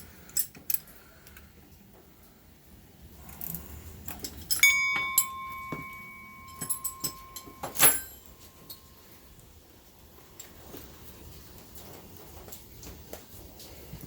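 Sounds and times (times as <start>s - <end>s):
metal tools clinking: 3.5s - 9.2s
metal part ringing: 4.4s - 9.0s
sharp metal clank: 4.5s - 8.9s.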